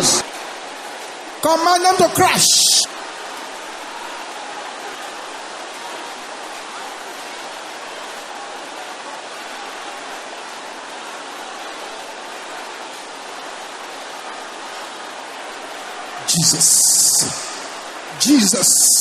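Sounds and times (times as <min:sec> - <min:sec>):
congregation praying aloud: 0:00.0 - 0:00.8, 0:01.4 - 0:19.0.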